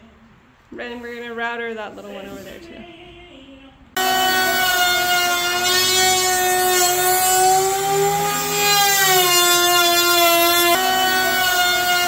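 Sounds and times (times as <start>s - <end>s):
wood router motor whine: 4.0s - 12.0s.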